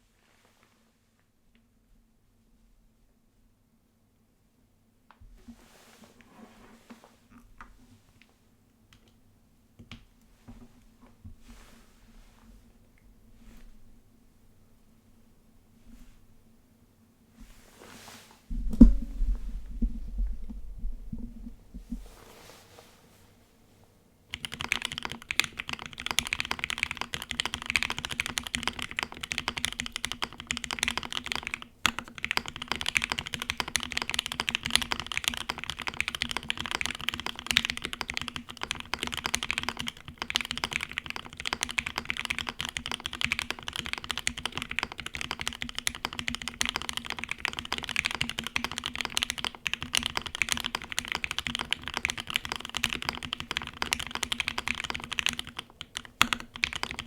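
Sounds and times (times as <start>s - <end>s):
fast typing on mechanical keyboard: 24.3s - 57.0s.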